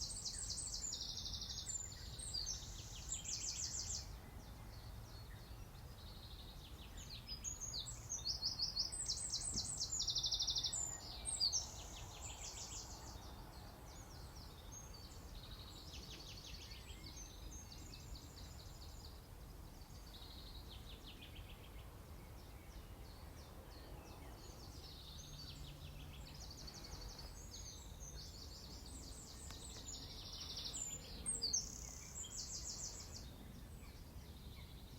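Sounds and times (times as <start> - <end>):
songbirds trilling: 22.3 - 34.9.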